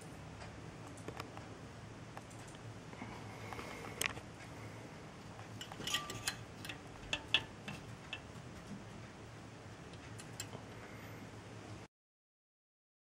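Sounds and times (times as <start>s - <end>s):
light clicks and ticks: 0.4s - 1.5s, 2.2s - 2.7s, 9.9s - 10.7s.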